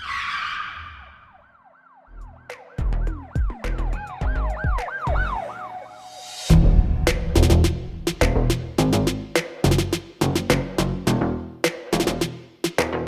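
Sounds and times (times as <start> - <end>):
siren wailing: 0.0 - 6.5
heavy bass hits: 6.5 - 11.2.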